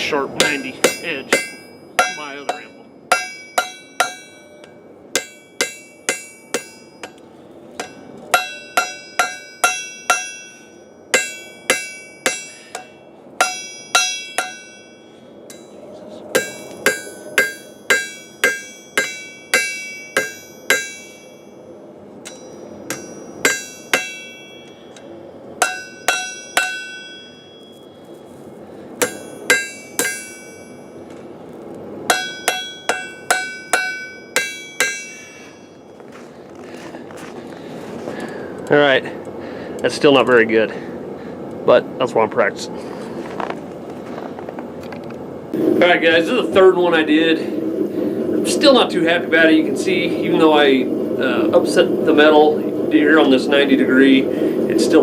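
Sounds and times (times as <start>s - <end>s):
hammer striking steel on anvil: 0.0s - 21.6s, 22.2s - 28.1s, 29.0s - 31.2s, 32.1s - 36.0s.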